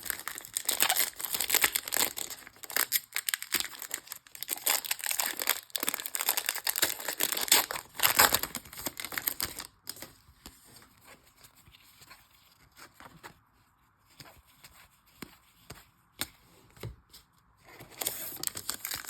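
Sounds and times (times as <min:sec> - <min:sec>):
wrapper crinkling and tearing: 0:00.0 - 0:10.0, 0:18.0 - 0:19.0.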